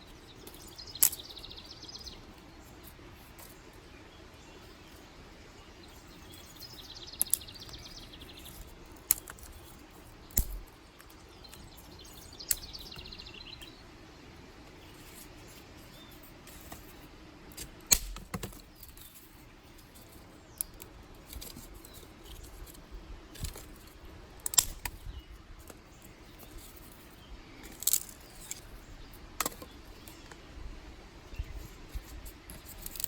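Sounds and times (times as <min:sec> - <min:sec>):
dry sticks snapping: 0:00.4 - 0:01.6, 0:06.6 - 0:13.8, 0:17.5 - 0:19.2, 0:20.0 - 0:26.9, 0:27.6 - 0:28.8.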